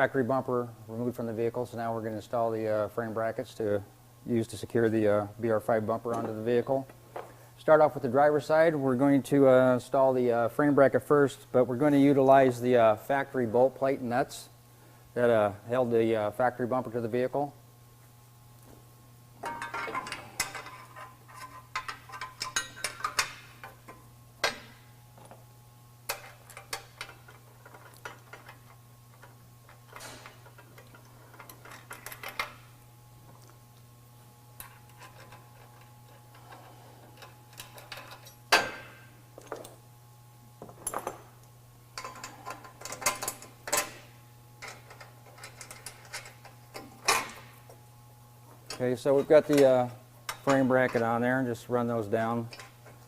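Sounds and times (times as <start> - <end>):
metal parts clinking and rattling: 19.4 - 23.8, 26.1 - 32.6, 34.6 - 38.8, 42.0 - 44.0, 44.6 - 47.5.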